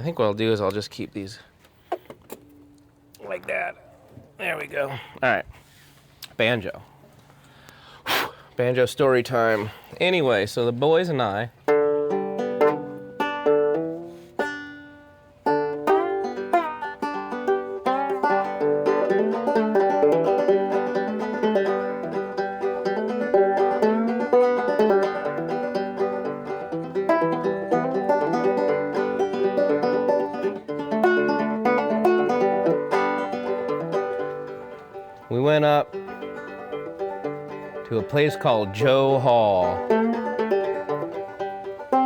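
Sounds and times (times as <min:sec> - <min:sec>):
banjo picked notes: 0:11.0 - 0:42.0
banjo strummed chords: 0:11.6 - 0:42.0.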